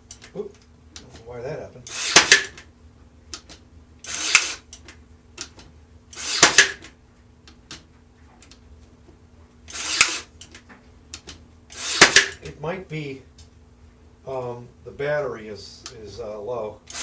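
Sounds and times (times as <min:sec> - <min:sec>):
pin nailer firing: 0:01.9 - 0:02.6, 0:04.0 - 0:04.7, 0:06.1 - 0:06.9, 0:09.7 - 0:10.3, 0:11.7 - 0:12.4.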